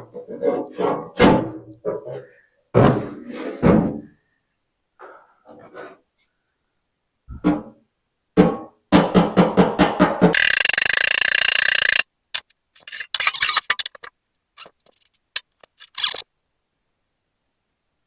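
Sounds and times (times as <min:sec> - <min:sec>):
rasping noise: 0:10.4 - 0:12.0, 0:12.8 - 0:16.3.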